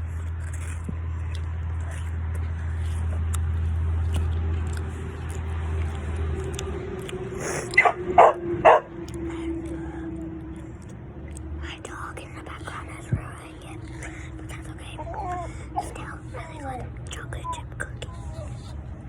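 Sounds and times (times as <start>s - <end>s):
chewing cookie crunching: 0.0s - 18.9s
steady low hum: 0.0s - 19.0s.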